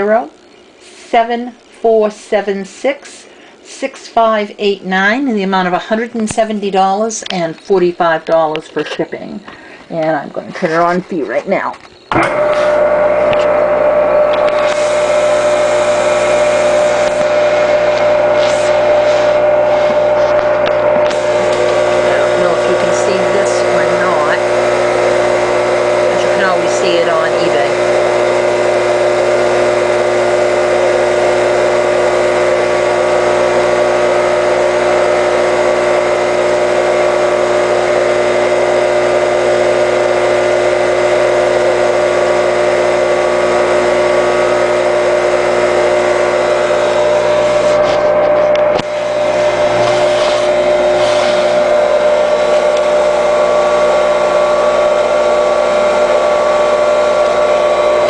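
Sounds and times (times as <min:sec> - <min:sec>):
table saw motor humming: 0:12.0 - 0:58.0.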